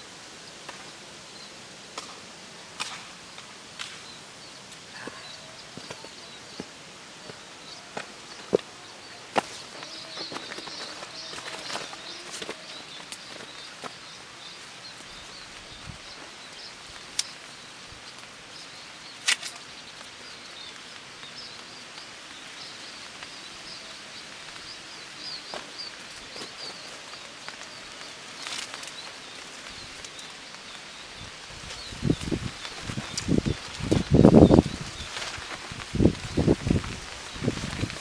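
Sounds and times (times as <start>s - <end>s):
background hiss: 0.0s - 38.0s
sharp clicks: 2.8s - 4.1s, 17.0s - 17.4s, 19.1s - 19.7s.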